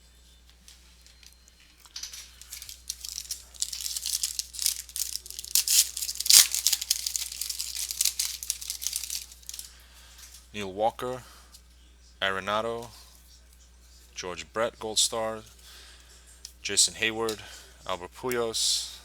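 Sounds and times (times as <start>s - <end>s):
wrapper tearing and crinkling: 1.9s - 9.7s.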